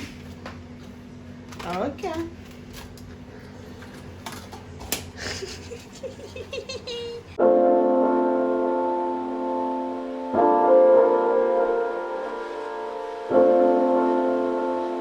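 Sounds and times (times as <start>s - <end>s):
slow piano chords: 7.4s - 15.0s.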